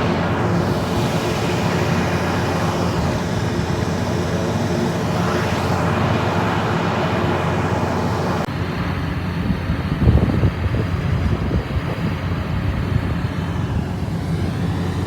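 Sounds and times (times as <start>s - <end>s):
high hiss: 0.0s - 8.5s
rushing noise: 0.0s - 8.5s
engine drone: 0.0s - 15.0s.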